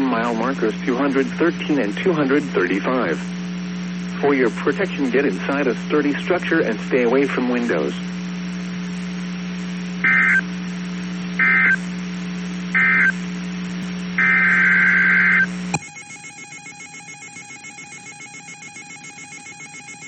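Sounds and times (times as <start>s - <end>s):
steady low hum: 0.0s - 15.8s
screechy digital data bursts: 10.0s - 10.4s, 11.4s - 11.8s, 12.8s - 13.2s, 14.2s - 20.0s.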